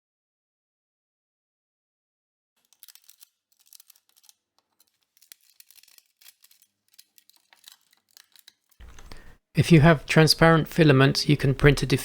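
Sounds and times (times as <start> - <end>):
plastic support material snapping: 2.6 - 9.3.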